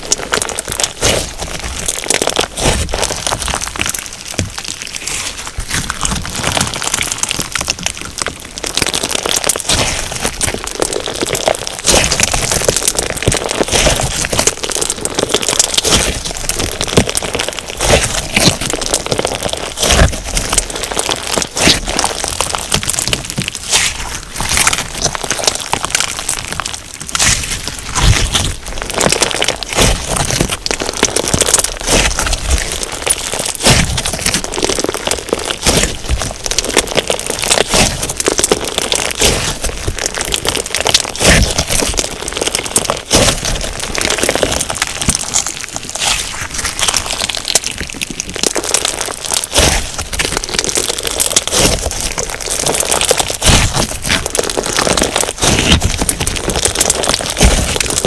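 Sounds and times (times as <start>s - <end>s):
crunchy slime crackling and popping: 0.0s - 58.0s.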